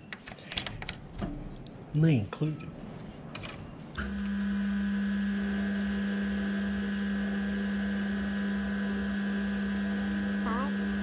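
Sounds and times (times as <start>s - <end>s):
electric motor humming: 4.0s - 11.0s.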